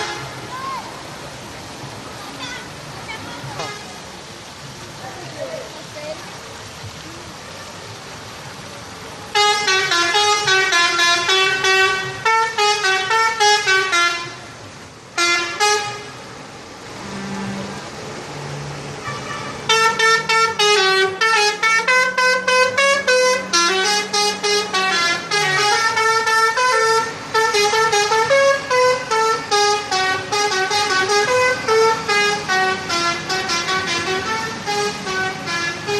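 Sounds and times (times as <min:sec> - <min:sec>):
multi-tone bus horn playing tune: 0:00.0 - 0:00.5, 0:09.3 - 0:14.6, 0:15.2 - 0:16.3, 0:17.0 - 0:17.9, 0:19.0 - 0:35.9.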